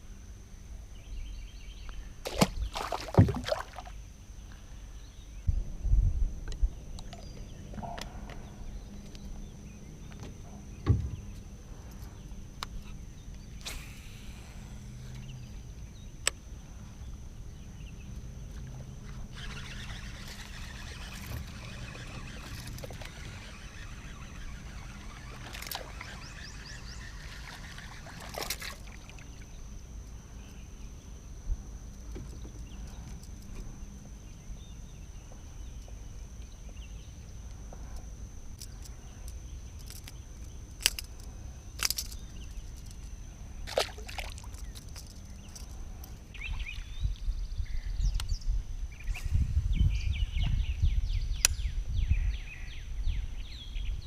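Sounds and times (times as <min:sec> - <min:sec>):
wind rumble on microphone: 0:05.4 - 0:11.3, 0:46.3 - 0:54.0.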